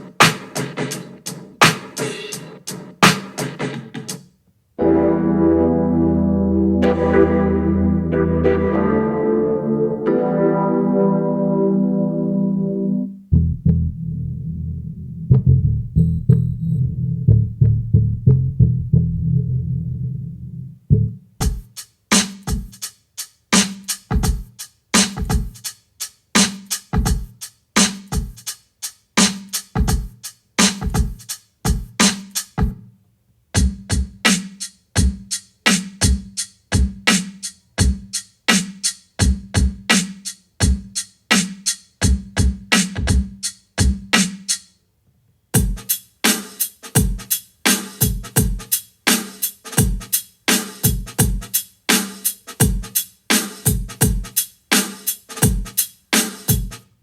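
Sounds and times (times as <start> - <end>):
drum machine beat: 0.0 - 4.3, 21.4 - 32.8, 33.6 - 44.6, 45.6 - 56.8.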